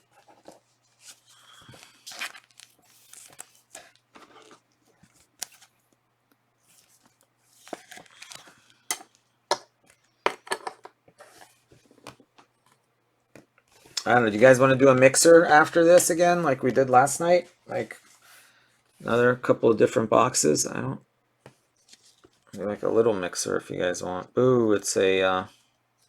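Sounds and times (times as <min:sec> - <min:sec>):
card wrappers crinkling: 0:00.1 - 0:05.9, 0:06.7 - 0:08.9.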